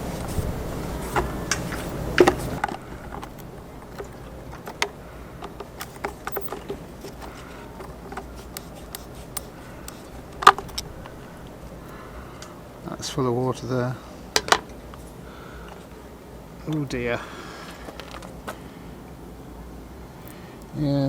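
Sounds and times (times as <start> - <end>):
clicks and knocks of tools: 0.3 - 12.5.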